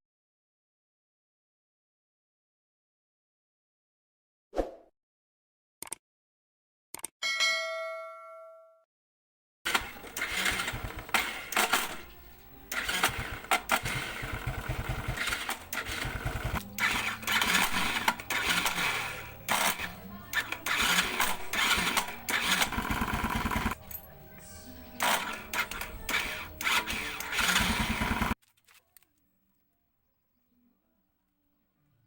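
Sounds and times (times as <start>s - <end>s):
motorcycle engine running: 9.7s - 23.8s, 25.2s - 28.4s
motorcycle starter cranking: 9.7s - 23.8s, 25.0s - 28.4s.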